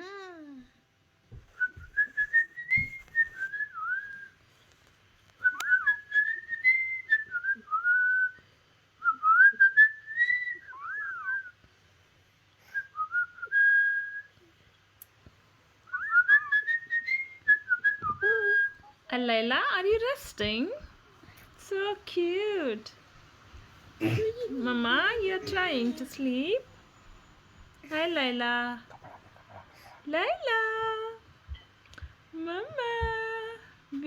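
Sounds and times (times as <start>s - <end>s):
whistled tune: 5.4s - 8.4s, 9.0s - 11.6s, 15.9s - 18.9s.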